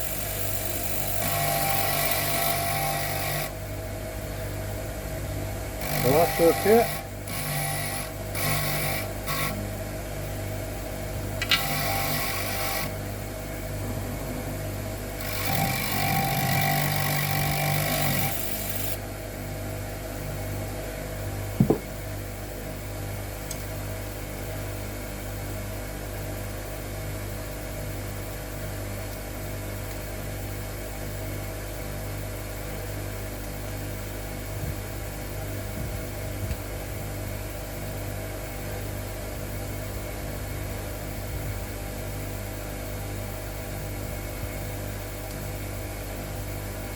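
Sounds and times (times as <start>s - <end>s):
bench grinder motor hum: 0.0s - 3.6s, 5.8s - 9.7s, 11.4s - 13.0s, 14.0s - 19.0s
grinding on wheel: 5.8s - 9.1s
sharp knock: 21.6s - 22.0s.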